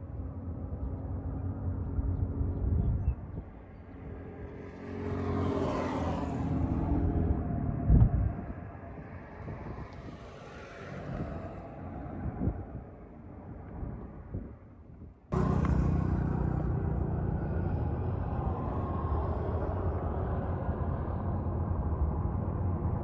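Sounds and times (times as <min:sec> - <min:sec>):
vehicle passing by: 0:04.5 - 0:07.9, 0:15.3 - 0:23.0
vehicle engine running: 0:15.3 - 0:19.8.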